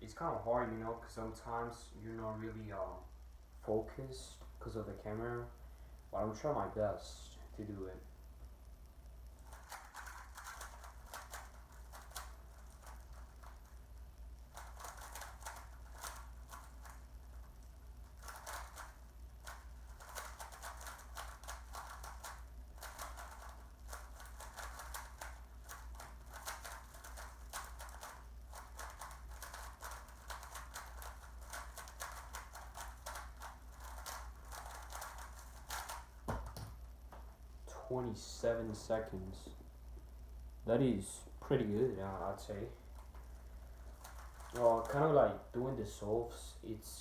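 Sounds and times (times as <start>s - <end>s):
puzzle cube plastic clicks: 9.4s - 13.8s, 14.5s - 36.7s, 43.0s - 45.0s.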